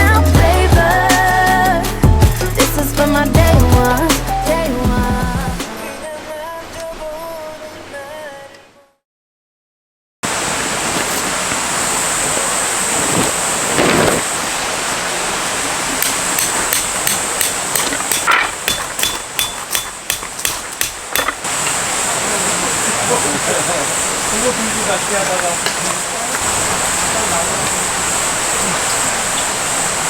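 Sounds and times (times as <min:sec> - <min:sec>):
mountain stream rushing: 0:05.6 - 0:08.5, 0:10.2 - 0:30.0.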